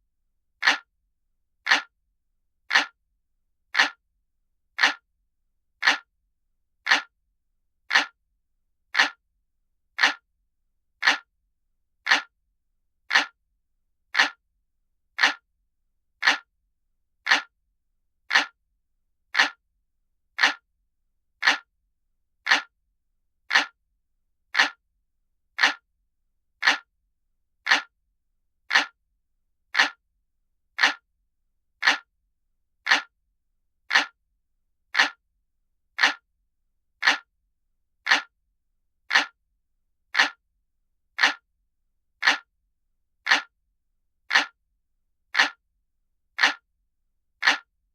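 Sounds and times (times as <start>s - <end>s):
clock ticking: 0.6s - 0.9s, 1.7s - 1.9s, 2.7s - 3.0s, 3.8s - 4.0s, 4.8s - 5.0s, 5.8s - 6.1s, 6.9s - 7.1s, 7.9s - 8.2s, 9.0s - 9.2s, 10.0s - 10.2s, 11.0s - 11.3s, 12.1s - 12.3s, 13.1s - 13.4s, 14.2s - 14.4s, 15.2s - 15.4s, 16.2s - 16.5s, 17.3s - 17.5s, 18.3s - 18.6s, 19.4s - 19.6s, 20.4s - 20.6s, 21.4s - 21.7s, 22.5s - 22.7s, 23.5s - 23.8s, 24.6s - 24.8s, 25.6s - 25.8s, 26.6s - 26.9s, 27.7s - 27.9s, 28.7s - 29.0s, 29.8s - 30.0s, 30.8s - 31.0s, 31.8s - 32.1s, 32.9s - 33.1s, 33.9s - 34.2s, 34.9s - 35.2s, 36.0s - 36.2s, 37.0s - 37.3s, 38.0s - 38.3s, 39.1s - 39.4s, 40.1s - 40.4s, 41.2s - 41.4s, 42.2s - 42.5s, 43.2s - 43.5s, 44.3s - 44.6s, 45.3s - 45.6s, 46.4s - 46.6s, 47.4s - 47.7s.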